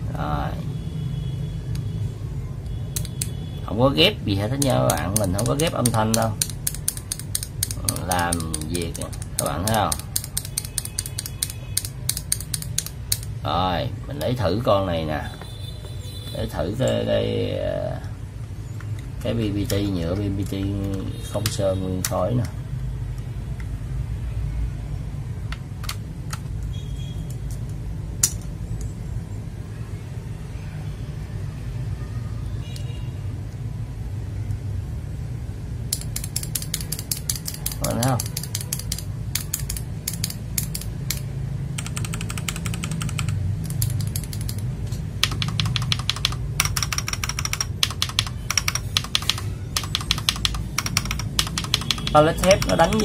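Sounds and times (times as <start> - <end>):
keyboard switch clicks: 4.6 - 13.3, 36.0 - 53.0.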